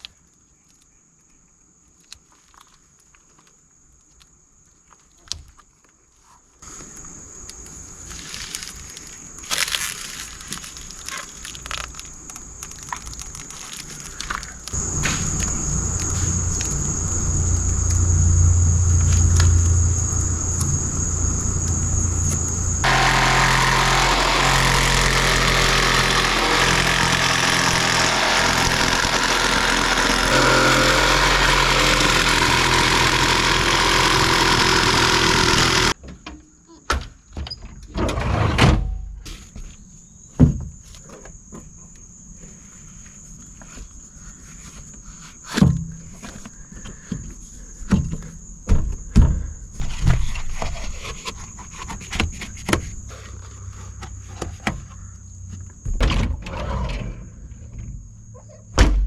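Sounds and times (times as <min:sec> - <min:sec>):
power saw humming: 0:14.8 - 0:36.0
saw rasping through plastic: 0:22.7 - 0:36.0.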